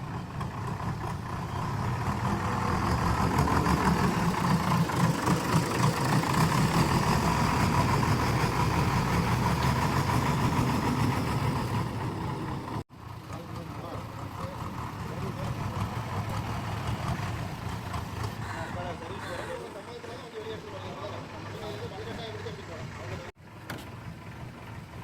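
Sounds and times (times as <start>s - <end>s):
diesel engine running: 0.0s - 25.0s.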